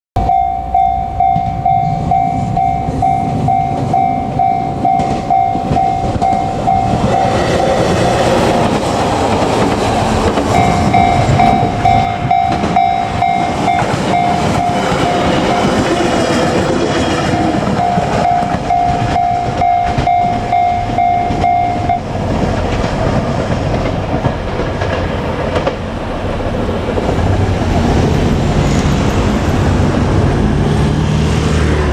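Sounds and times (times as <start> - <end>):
level-crossing alarm ringing: 0.2 - 8.6, 10.4 - 22.1
train wheels clattering on rails: 0.2 - 31.9.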